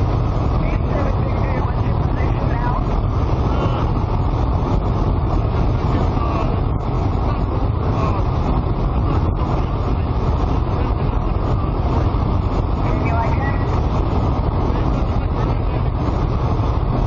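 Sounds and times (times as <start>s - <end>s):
light aircraft engine: 0.0s - 17.0s
wind rushing: 0.0s - 17.0s.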